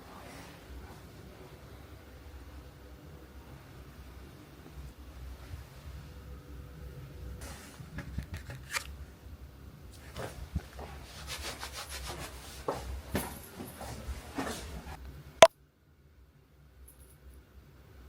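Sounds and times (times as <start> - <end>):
rustling and rubbing: 10.0 - 13.1.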